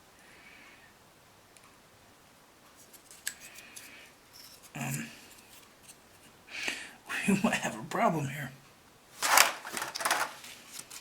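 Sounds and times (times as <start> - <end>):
plastic parts clicking: 9.2 - 10.4
plastic parts scraping: 9.2 - 11.0.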